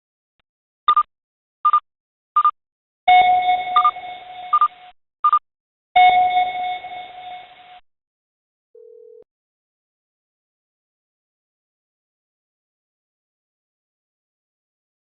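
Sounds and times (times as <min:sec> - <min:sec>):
electronic chime tones: 0:03.1 - 0:04.8, 0:06.0 - 0:07.8
short high beeps: 0:03.1 - 0:05.4, 0:06.0 - 0:07.8.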